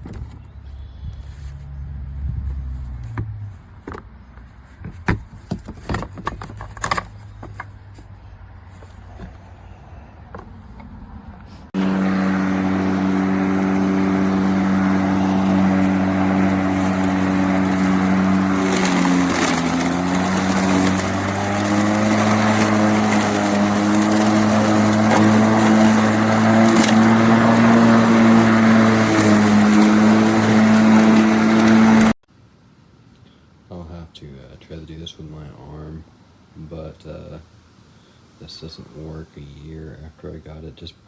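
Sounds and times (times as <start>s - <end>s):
lawn mower motor humming: 11.8s - 32.2s.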